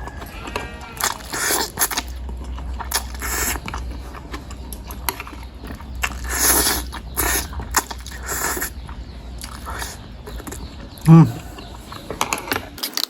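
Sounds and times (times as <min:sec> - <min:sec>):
slurping: 0:00.0 - 0:13.0
wet chewing and smacking: 0:00.0 - 0:13.0.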